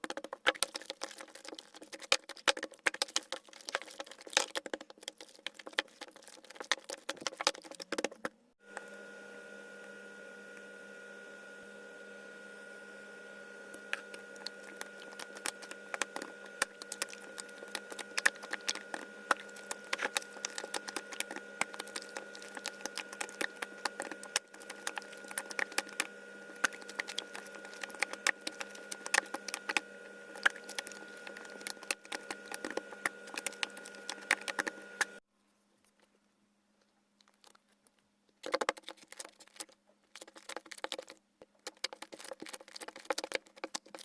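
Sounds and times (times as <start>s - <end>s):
sticky clicks and pops: 0.0s - 8.3s, 13.7s - 35.2s, 38.4s - 44.0s
steady electrical hum: 7.7s - 35.2s
slime squished by hand: 13.8s - 35.2s.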